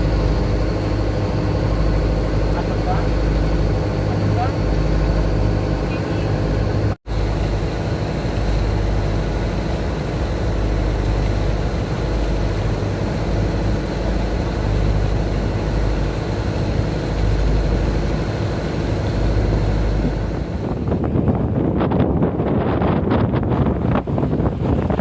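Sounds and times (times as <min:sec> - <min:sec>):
heavy engine humming: 0:00.0 - 0:25.0.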